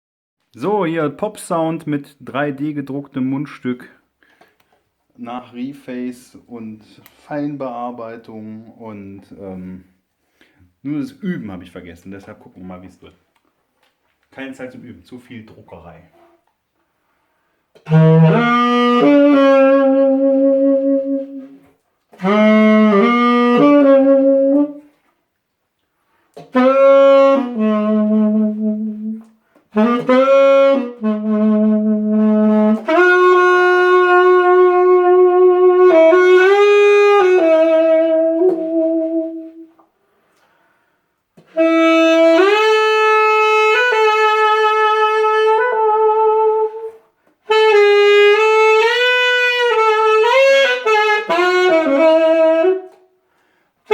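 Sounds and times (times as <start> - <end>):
solo saxophone melody: 17.7 - 25.1, 26.4 - 39.9, 41.4 - 53.9.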